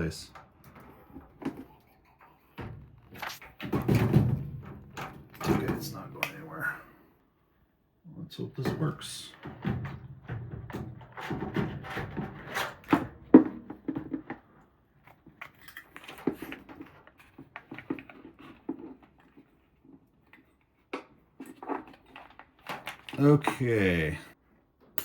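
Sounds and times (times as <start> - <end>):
plastic parts clicking and rattling: 9.3 - 24.1.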